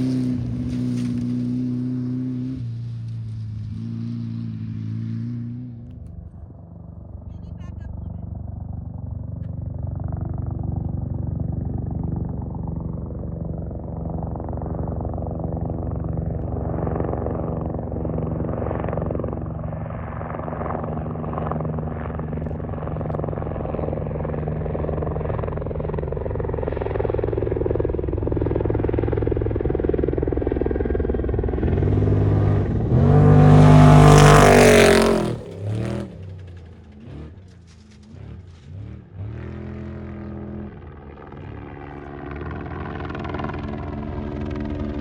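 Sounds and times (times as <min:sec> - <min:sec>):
race vehicle engines: 0:00.0 - 0:11.0, 0:20.4 - 0:45.0.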